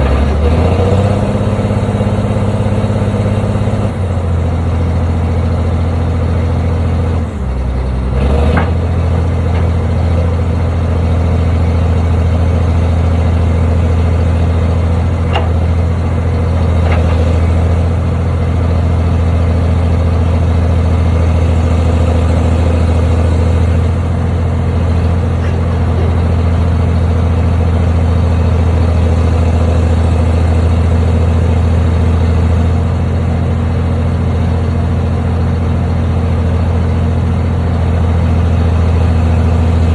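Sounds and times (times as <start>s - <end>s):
machine engine hum: 1.1s - 31.7s.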